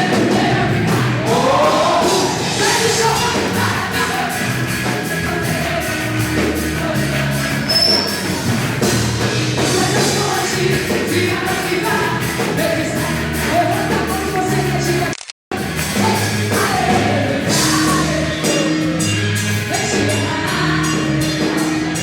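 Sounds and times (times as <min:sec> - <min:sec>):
person singing: 0:00.0 - 0:08.0, 0:09.6 - 0:15.1, 0:15.9 - 0:19.1
rock band playing: 0:00.0 - 0:22.0
steady drum beat: 0:00.0 - 0:22.0
sustained bass notes: 0:00.0 - 0:22.0.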